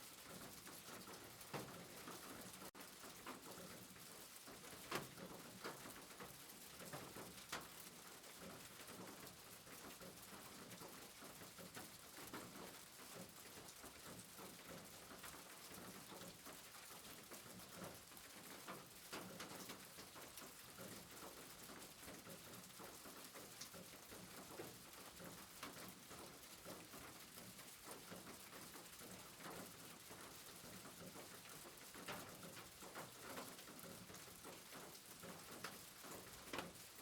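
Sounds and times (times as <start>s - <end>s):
soft rain falling: 0.0s - 37.0s.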